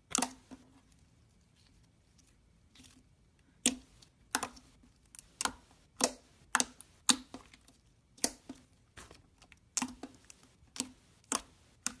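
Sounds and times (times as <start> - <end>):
sticky slime pops and clicks: 5.4 - 7.4.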